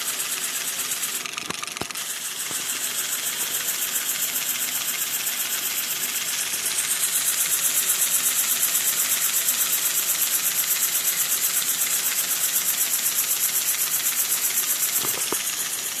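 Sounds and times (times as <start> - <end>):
miniature steam engine puffing: 0.0 - 9.6, 14.4 - 16.0.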